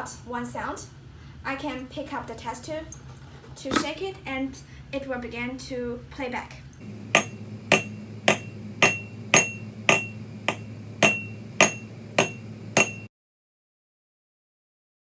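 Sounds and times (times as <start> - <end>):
low hum: 6.8 - 13.1
metallic knocks on iron box: 7.2 - 13.1.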